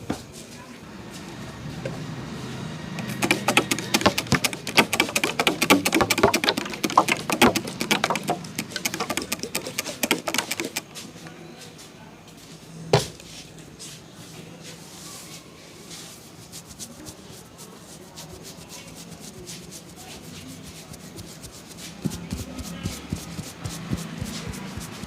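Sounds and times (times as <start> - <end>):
hands tapping and slapping: 3.0 - 10.9, 20.7 - 25.0.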